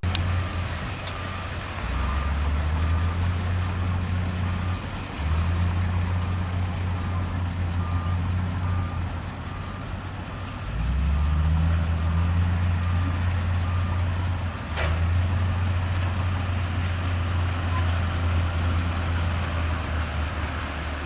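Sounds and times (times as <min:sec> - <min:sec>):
reversing alarm beeping: 0:00.0 - 0:14.5
heavy diesel machine engine: 0:00.0 - 0:21.0.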